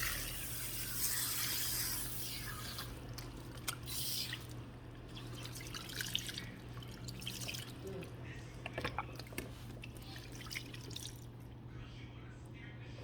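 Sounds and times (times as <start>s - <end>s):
water dripping and splashing: 2.6s - 8.1s.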